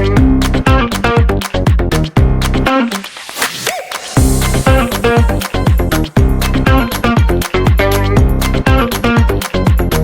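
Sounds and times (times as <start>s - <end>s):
electronic dance music: 2.2s - 10.0s.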